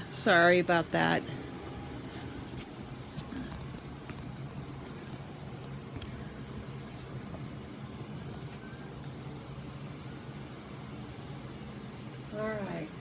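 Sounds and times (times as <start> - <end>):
steady low hum: 0.0 - 13.0
faint clicks and crackles: 1.7 - 9.2.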